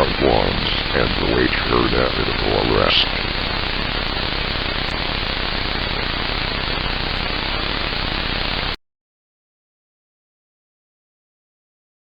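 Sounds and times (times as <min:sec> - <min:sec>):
radio static hiss: 0:00.0 - 0:08.8.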